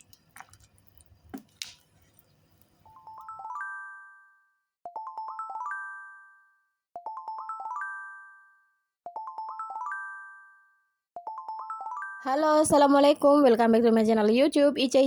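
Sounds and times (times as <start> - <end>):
electronic bell-like chime music: 3.0 - 12.4.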